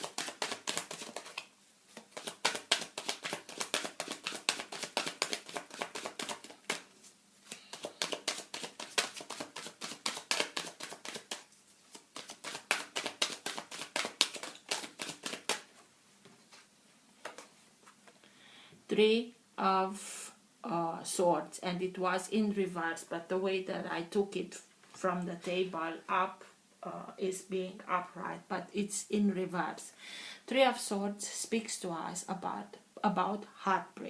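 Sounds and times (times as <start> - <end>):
cards being shuffled: 0.0 - 15.7, 17.2 - 18.2.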